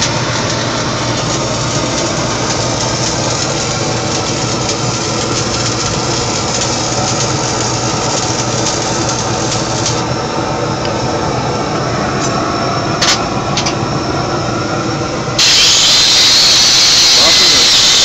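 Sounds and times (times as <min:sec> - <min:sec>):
welding arc crackling and sizzling: 0:00.0 - 0:10.2, 0:15.3 - 0:18.0
welding machine low hum: 0:00.0 - 0:18.0.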